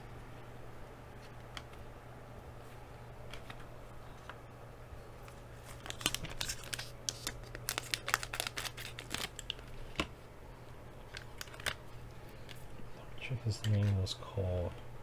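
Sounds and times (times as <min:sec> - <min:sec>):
wrapper crinkling and tearing: 0:05.3 - 0:10.1.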